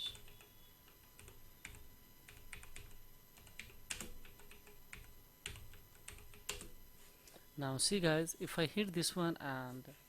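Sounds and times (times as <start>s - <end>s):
typing on computer keyboard: 0.0s - 6.8s.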